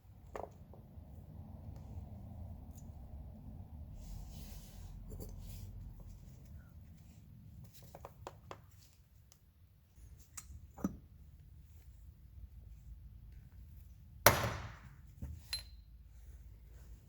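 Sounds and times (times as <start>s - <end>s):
low steady rumble: 0.0s - 7.8s.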